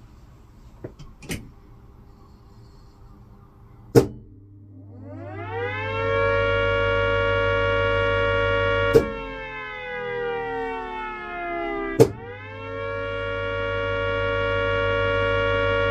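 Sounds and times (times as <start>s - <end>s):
siren winding up: 4.8s - 15.9s.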